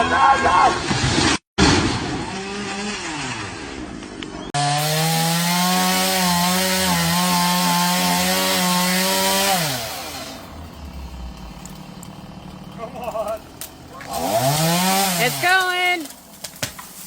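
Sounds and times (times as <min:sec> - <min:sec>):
chainsaw cutting wood: 0:02.0 - 0:03.8, 0:04.6 - 0:17.0.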